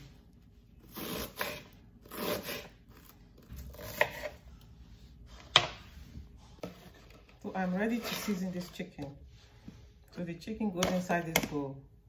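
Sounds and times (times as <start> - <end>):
knife scraping across cutting board: 0.8 - 4.6, 5.3 - 9.0.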